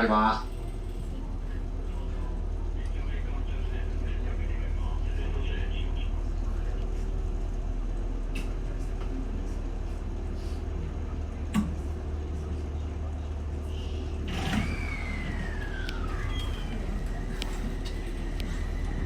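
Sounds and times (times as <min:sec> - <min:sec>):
low hum: 0:11.9 - 0:19.0
electric whine: 0:14.3 - 0:19.0.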